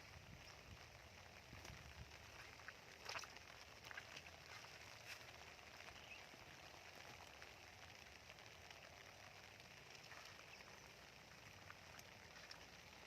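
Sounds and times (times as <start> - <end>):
faint steady rain hiss: 0.0 - 13.0
soft raindrop ticks: 0.0 - 13.0.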